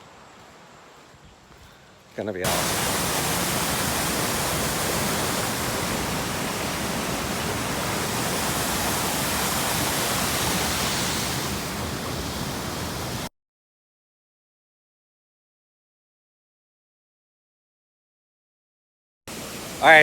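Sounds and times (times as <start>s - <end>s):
waterfall rushing: 2.4s - 13.3s, 19.3s - 20.0s.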